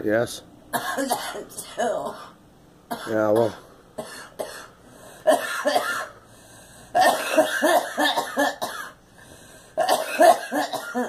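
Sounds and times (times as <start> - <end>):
girl coughing: 0.7 - 6.2, 7.0 - 9.0, 9.8 - 11.0.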